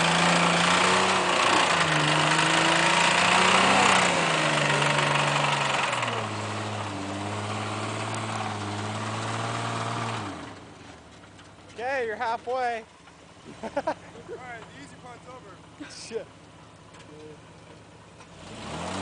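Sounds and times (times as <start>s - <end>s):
truck engine revving hard: 0.0s - 10.7s, 18.3s - 19.0s.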